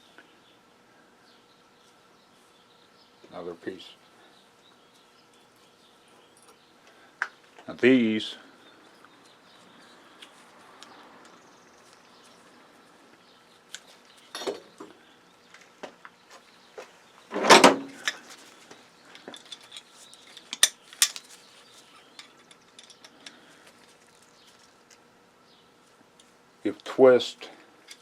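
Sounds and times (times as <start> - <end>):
small metal parts clinking: 19.1 - 25.0, 27.8 - 28.0.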